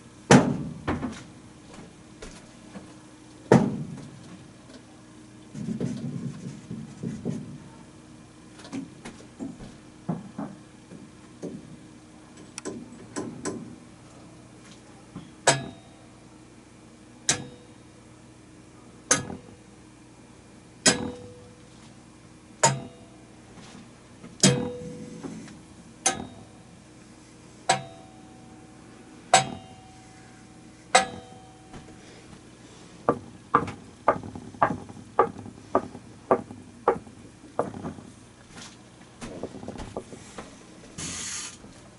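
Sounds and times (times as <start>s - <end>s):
sharp knocks with short ring: 15.5s - 15.9s, 17.3s - 17.7s, 22.6s - 23.1s, 24.4s - 25.0s, 26.1s - 26.5s, 27.7s - 28.1s, 29.4s - 29.9s, 31.0s - 31.9s.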